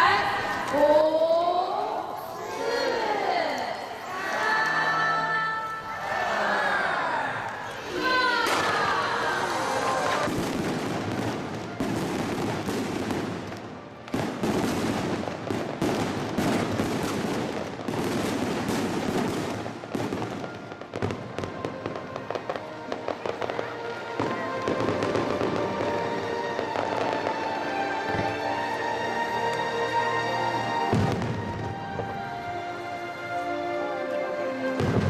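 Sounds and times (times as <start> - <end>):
music: 0.0 - 35.0
fireworks bursting and crackling: 8.1 - 29.6, 30.7 - 32.6, 34.7 - 35.0.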